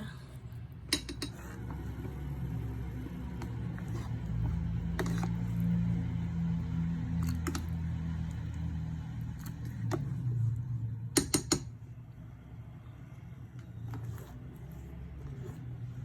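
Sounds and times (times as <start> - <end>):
kitchenware clinking: 0.9 - 1.4.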